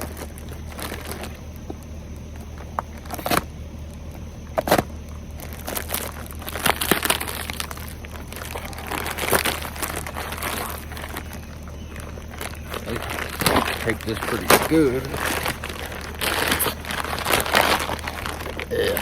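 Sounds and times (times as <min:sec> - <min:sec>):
sharp plastic rips: 0:04.6 - 0:19.0
plastic package being torn open: 0:12.3 - 0:19.0.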